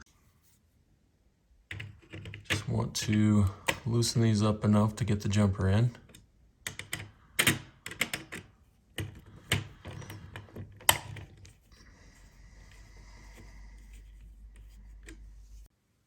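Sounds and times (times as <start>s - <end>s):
screwdriver clicks and taps: 6.1s - 11.5s.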